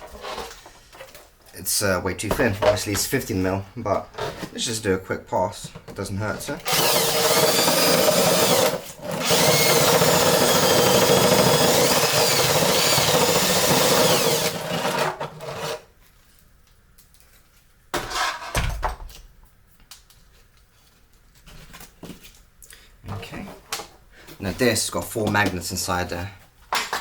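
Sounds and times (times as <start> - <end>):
power drill whining: 6.6 - 15.8.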